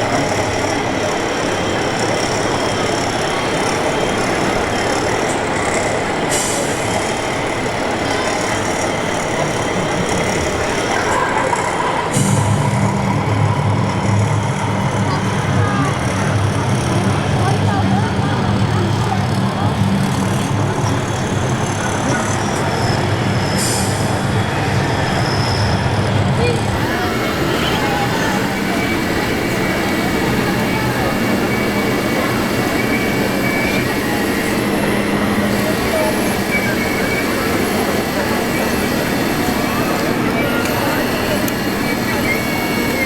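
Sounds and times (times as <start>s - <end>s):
high motor whine: 0.0s - 43.0s
model machines running: 0.0s - 43.0s
hiss: 26.8s - 43.0s.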